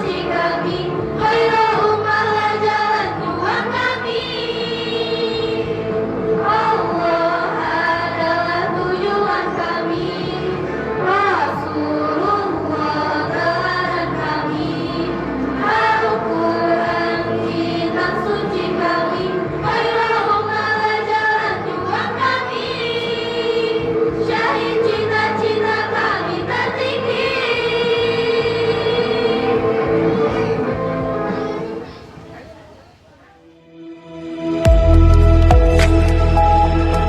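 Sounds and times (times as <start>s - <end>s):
choir singing long notes: 0.0s - 32.3s, 33.6s - 37.0s.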